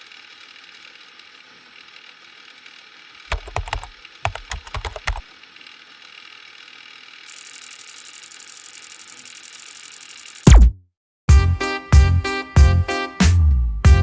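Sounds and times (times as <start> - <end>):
sharp clicks and knocks: 3.3 - 5.2.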